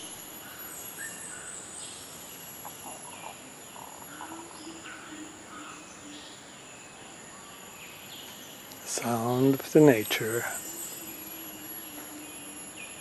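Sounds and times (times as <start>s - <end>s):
birds calling: 0.0s - 13.0s
high-pitched insect drone: 8.9s - 13.0s.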